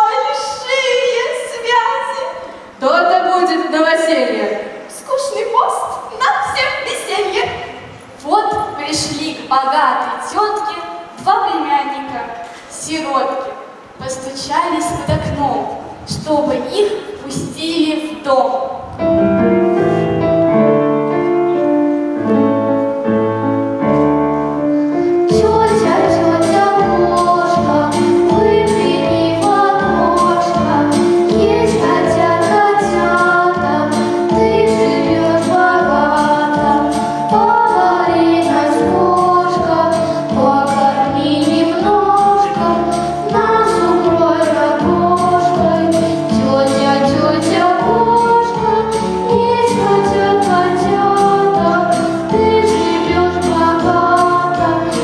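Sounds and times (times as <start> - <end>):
song with backing track: 18.8 - 55.0
voices singing: 24.8 - 55.0.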